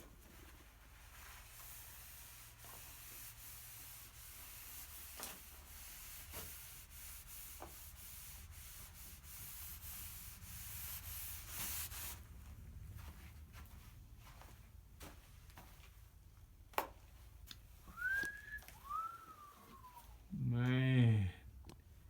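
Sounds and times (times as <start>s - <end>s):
rubbing on wood: 0.4s - 12.2s.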